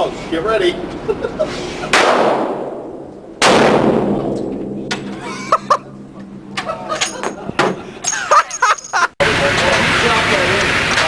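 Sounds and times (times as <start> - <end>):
gunshots with echo: 1.9 - 5.2.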